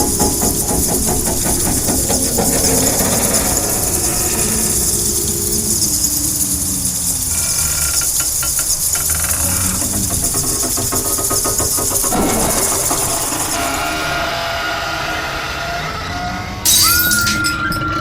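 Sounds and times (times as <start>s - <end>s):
rapid clattering clicks: 0.0s - 14.0s
steady hiss: 0.0s - 14.3s
low mechanical rumble: 0.0s - 16.6s.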